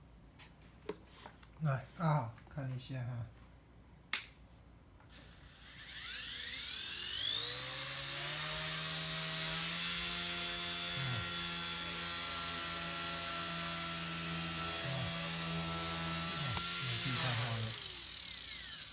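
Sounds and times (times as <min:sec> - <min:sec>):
small electric motor whine: 0:05.0 - 0:18.9
rotor hum: 0:13.9 - 0:18.9.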